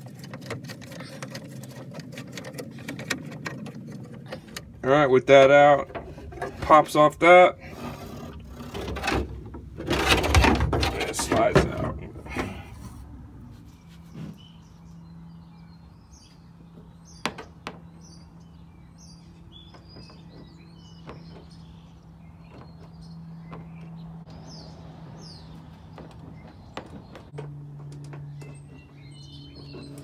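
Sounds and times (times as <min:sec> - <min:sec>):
steady low hum: 0:00.0 - 0:30.0
birds chirping: 0:11.0 - 0:30.0.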